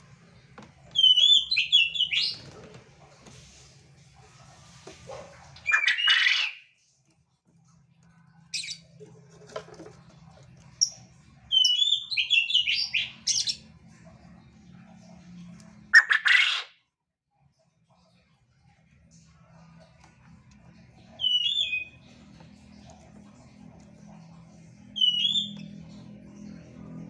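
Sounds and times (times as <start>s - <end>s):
quail calling: 5.6s - 6.6s, 16.0s - 16.7s.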